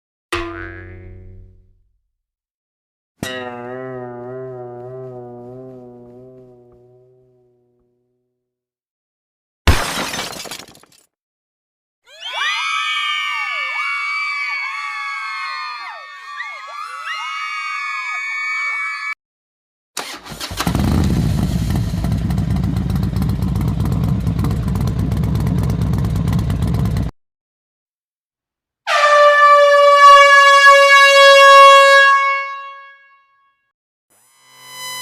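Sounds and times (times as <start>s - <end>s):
engine running: 20.0s - 27.1s
loud air horn blast: 28.9s - 33.2s.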